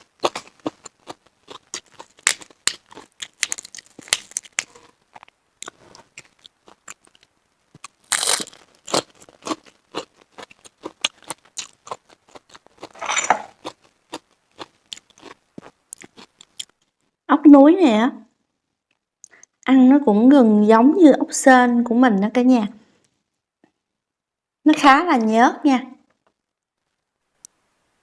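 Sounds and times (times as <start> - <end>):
wet chewing clicks and crunches: 0.0 - 16.9
rustling tearing sounds: 1.8 - 5.0, 8.0 - 9.4.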